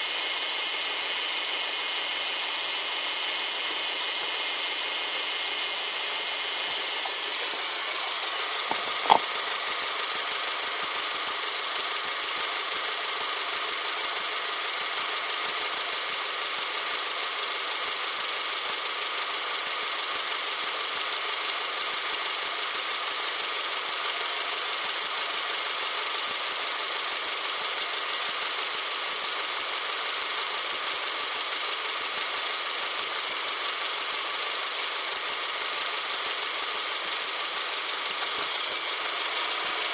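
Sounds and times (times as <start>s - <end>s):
car engine idling: 0.2s - 39.9s
sharp click: 8.7s - 9.3s.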